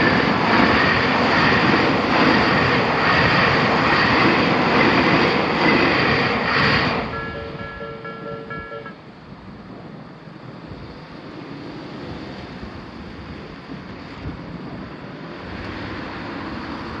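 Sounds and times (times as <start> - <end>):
wind on microphone: 0.0 - 17.0
two-tone crossing warning bell: 7.0 - 9.1.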